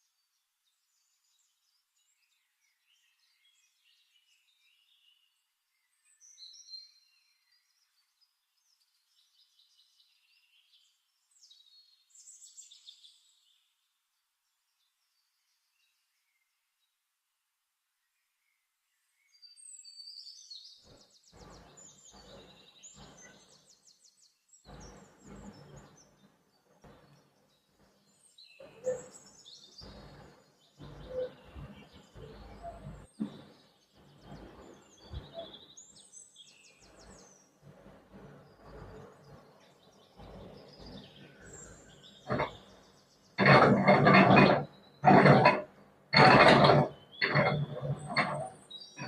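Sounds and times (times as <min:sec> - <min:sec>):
birds chirping: 0:19.2 - 0:49.0
knocks and clatter: 0:32.7 - 0:34.5, 0:42.2 - 0:42.6, 0:43.4 - 0:49.0.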